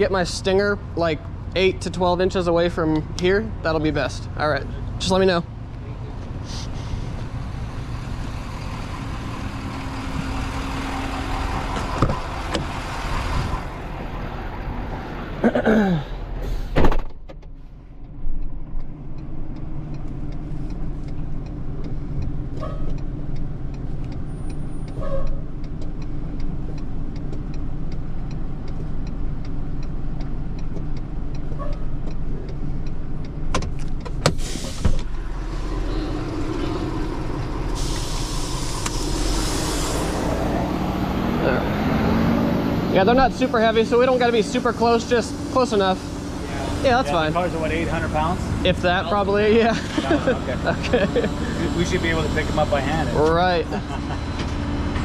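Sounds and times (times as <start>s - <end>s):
truck engine running: 0.0s - 16.4s, 17.6s - 55.0s
sharp clunk: 16.7s - 17.5s
falling whine: 35.1s - 55.0s.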